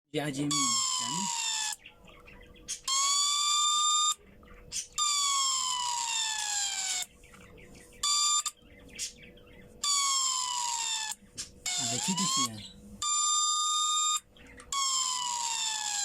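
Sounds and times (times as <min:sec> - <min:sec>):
buzzy electronic alarm siren: 0:00.5 - 0:01.8, 0:02.9 - 0:04.3, 0:08.0 - 0:08.6, 0:09.9 - 0:16.0.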